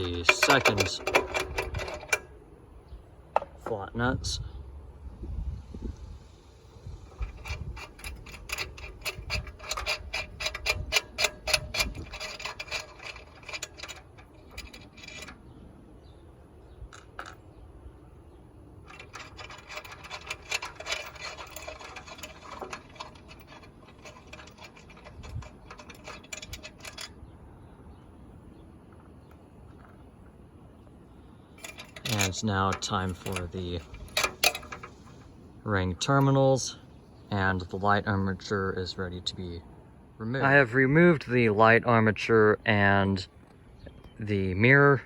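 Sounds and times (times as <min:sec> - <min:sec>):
metallic ticking of hand tool: 0:00.0 - 0:02.3, 0:07.1 - 0:15.4, 0:18.9 - 0:27.1, 0:31.6 - 0:35.2.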